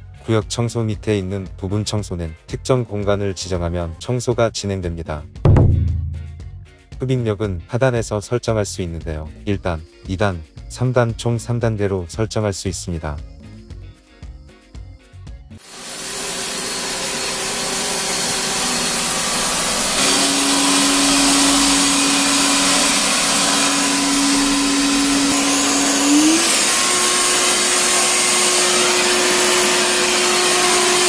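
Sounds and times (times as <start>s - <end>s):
robot vacuum fan whining hum: 15.6s - 31.0s.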